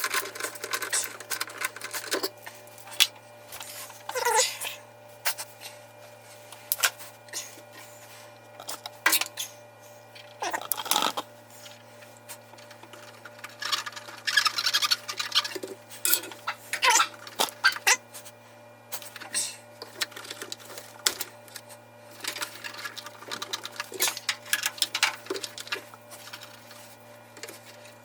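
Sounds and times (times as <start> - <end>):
steady low hum: 0.0 - 28.0
tools and metal parts clicking: 12.9 - 17.0, 22.2 - 26.7.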